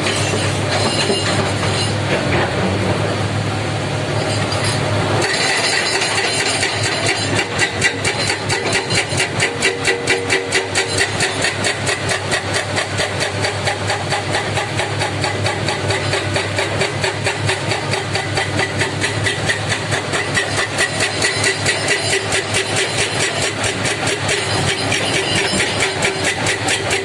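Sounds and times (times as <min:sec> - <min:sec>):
heavy diesel engine pulsing: 0:00.0 - 0:27.0.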